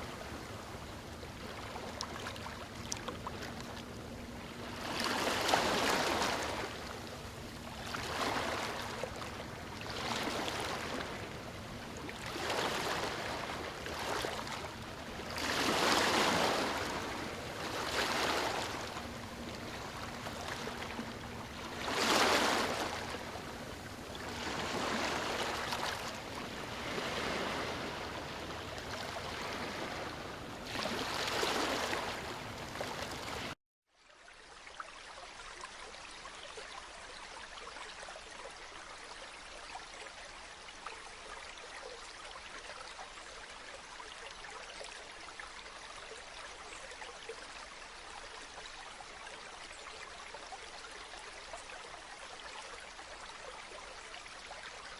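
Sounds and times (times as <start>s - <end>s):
small waves washing in: 0.0s - 33.6s.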